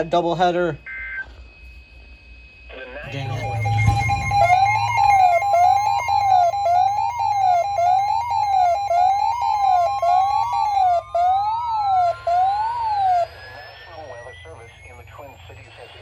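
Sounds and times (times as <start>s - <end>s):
electronic siren wailing: 0.0s - 16.0s
tone climbing in pitch: 3.0s - 15.0s
weather radio alert tone: 3.0s - 16.0s.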